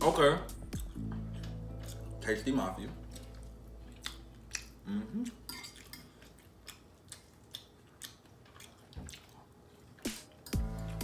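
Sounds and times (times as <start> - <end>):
person humming: 4.8 - 5.4.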